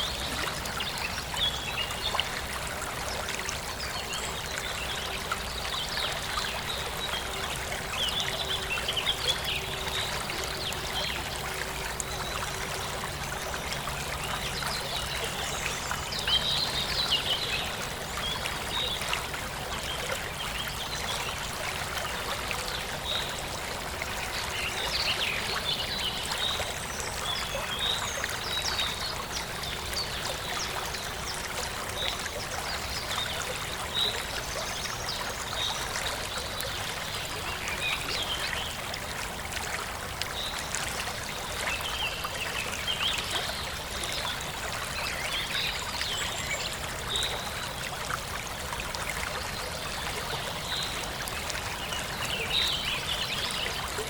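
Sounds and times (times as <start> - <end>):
stream running over stones: 0.0 - 54.0.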